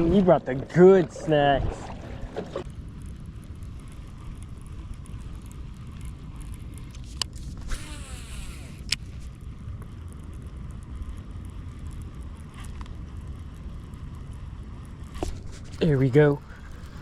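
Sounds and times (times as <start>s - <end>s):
fishing line whirring out: 0.0s - 9.7s, 15.0s - 17.0s
fishing reel click: 2.9s - 9.2s.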